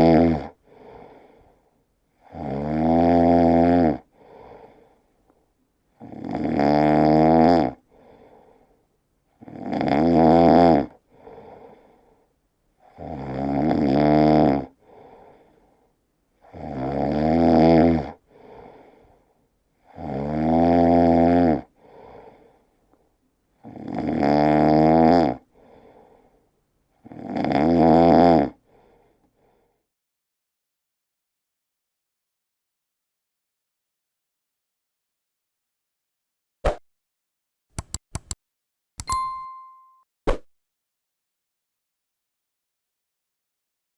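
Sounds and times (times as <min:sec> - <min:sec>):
person snoring loudly: 0:00.0 - 0:00.9, 0:02.2 - 0:04.7, 0:06.0 - 0:08.2, 0:09.4 - 0:11.6, 0:12.8 - 0:15.1, 0:16.4 - 0:18.2, 0:19.9 - 0:21.9, 0:23.6 - 0:25.5, 0:27.0 - 0:28.6
quiet out-breath: 0:00.6 - 0:01.9, 0:04.1 - 0:05.6, 0:07.8 - 0:09.0, 0:11.1 - 0:13.0, 0:14.8 - 0:16.1, 0:18.2 - 0:19.6, 0:21.8 - 0:23.2, 0:25.5 - 0:26.6, 0:28.6 - 0:29.9.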